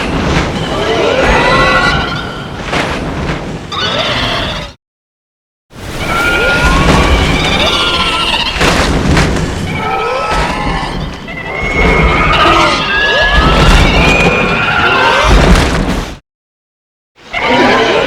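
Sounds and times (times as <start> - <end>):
monster screeching cries: 6.0 - 8.6.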